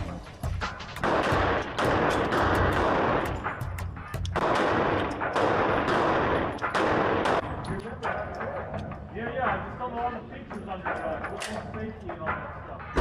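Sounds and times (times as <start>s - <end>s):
pistol gunshots: 0.9s - 7.8s.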